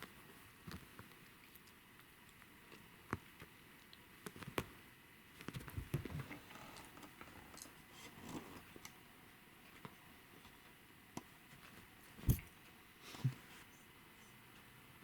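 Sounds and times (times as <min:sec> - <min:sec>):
soft thumps and rustles: 0:11.5 - 0:12.5.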